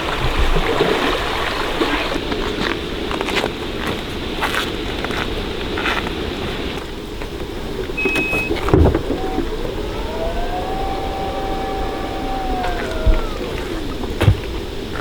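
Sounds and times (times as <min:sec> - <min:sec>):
stream flowing: 0:00.0 - 0:03.1
engine hum: 0:00.0 - 0:15.0.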